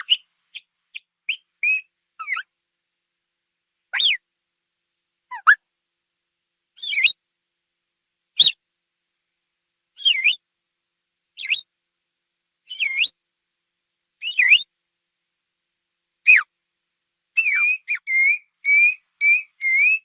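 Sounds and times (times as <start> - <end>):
quail whistled chirps: 0.0 - 2.5, 3.9 - 4.2, 5.3 - 5.6, 6.8 - 7.2, 8.4 - 8.6, 10.0 - 10.4, 11.4 - 11.7, 12.7 - 13.2, 14.2 - 14.7, 16.2 - 16.5, 17.4 - 20.0.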